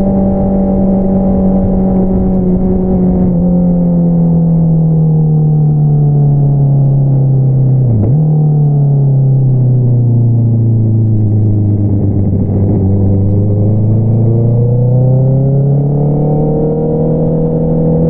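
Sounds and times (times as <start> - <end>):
motorcycle engine revving: 0.0 - 4.8, 10.4 - 18.0.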